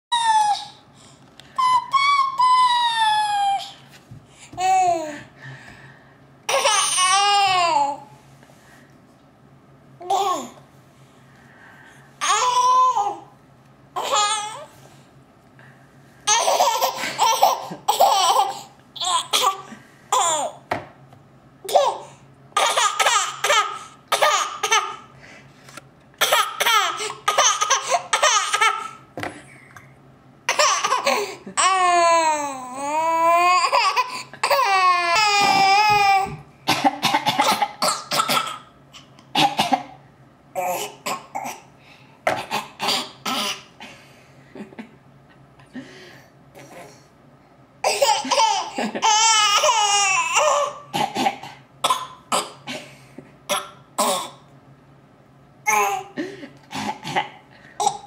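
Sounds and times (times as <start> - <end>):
coughing: 22.6 - 25.0, 26.2 - 29.0, 35.4 - 41.7, 42.3 - 44.0, 47.8 - 54.5, 55.6 - 58.0
person laughing: 48.3 - 49.2.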